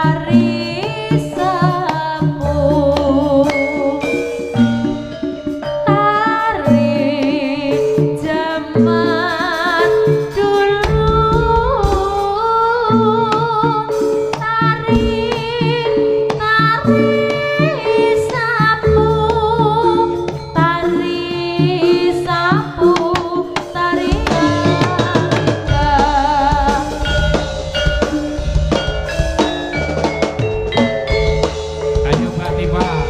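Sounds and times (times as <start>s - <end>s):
woman singing with vibrato: 0.0s - 4.5s, 5.8s - 27.3s
sharp percussion strikes: 0.0s - 33.0s
sustained instrument tones: 23.9s - 33.0s.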